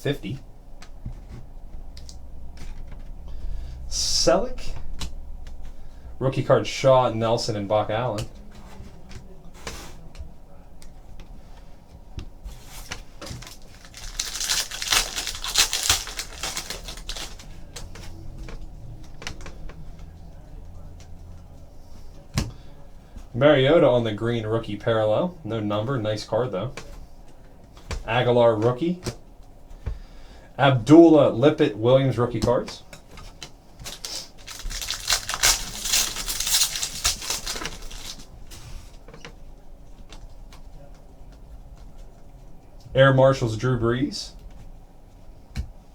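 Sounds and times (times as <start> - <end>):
wrapper tearing and crinkling: 13.3 - 18.1, 33.8 - 38.4
cards clicking while handled: 33.9 - 38.3.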